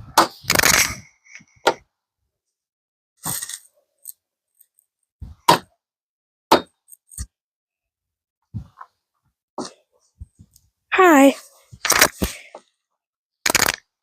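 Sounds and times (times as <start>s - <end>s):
tools and plastic parts clattering: 0.2s - 1.7s, 3.2s - 4.8s, 13.5s - 13.8s.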